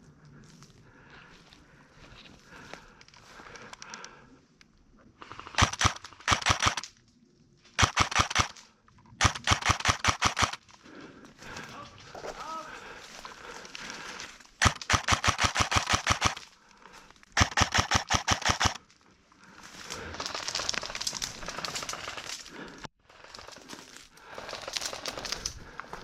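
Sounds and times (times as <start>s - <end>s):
airsoft gun full-auto bursts: 5.4s - 6.9s, 7.8s - 8.6s, 9.2s - 10.7s, 14.6s - 16.4s, 17.4s - 18.8s.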